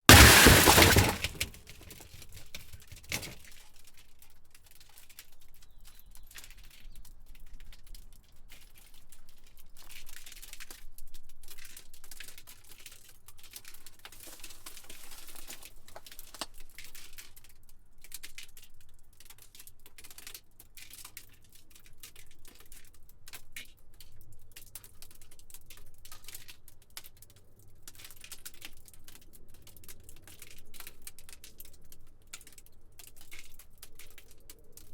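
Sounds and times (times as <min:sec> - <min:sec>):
glass shattering: 0:00.1 - 0:01.5.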